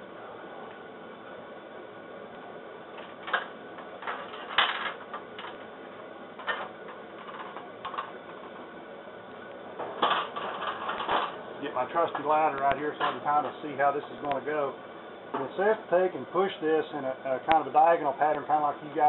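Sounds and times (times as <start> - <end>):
knocks and clatters of handling: 3.0 - 5.6, 6.4 - 8.6, 9.8 - 11.4
steady hiss: 8.7 - 19.0.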